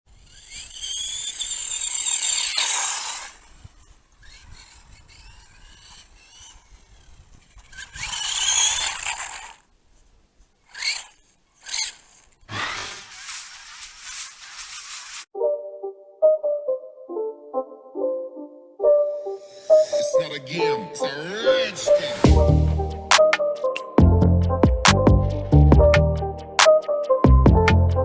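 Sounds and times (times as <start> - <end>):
rc car motor whining: 0.1 - 9.7, 10.6 - 15.3.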